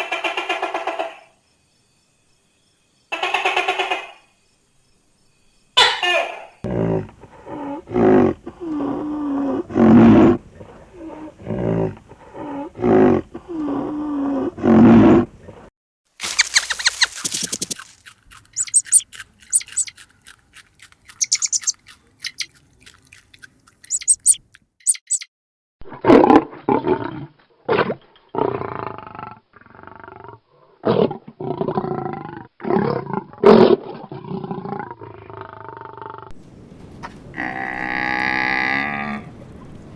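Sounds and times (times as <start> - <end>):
lower pitched animal calls: 16.2 - 20.0, 21.1 - 22.6, 23.8 - 25.3
high-pitched animal chirps: 16.2 - 25.3.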